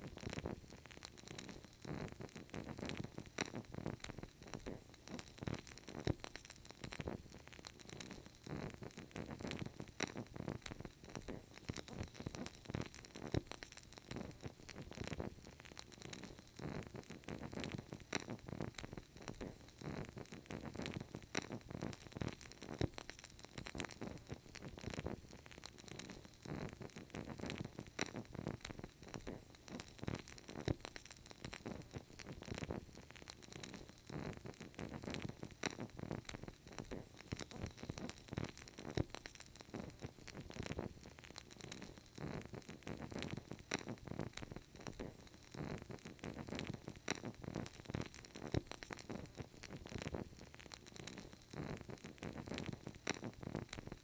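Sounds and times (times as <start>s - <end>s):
candle wick crackling: 0.0s - 54.0s
soft steady hiss: 0.0s - 54.0s.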